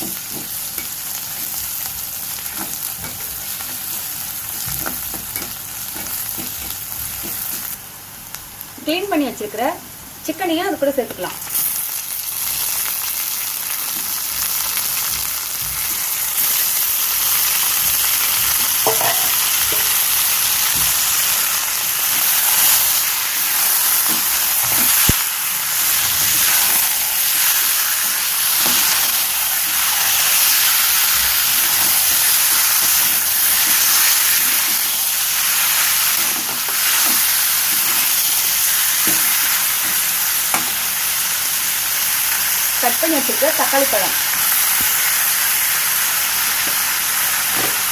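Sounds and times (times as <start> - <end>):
chicken sizzling in hot oil: 0.0 - 8.7, 11.3 - 47.9
spoon knocking against pan: 18.8 - 19.9.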